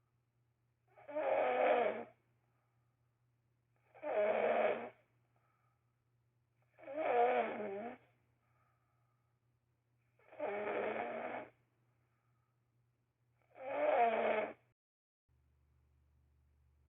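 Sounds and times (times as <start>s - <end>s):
snoring: 0.9s - 2.2s, 3.9s - 5.0s, 6.7s - 8.1s, 10.2s - 11.6s, 13.4s - 14.7s.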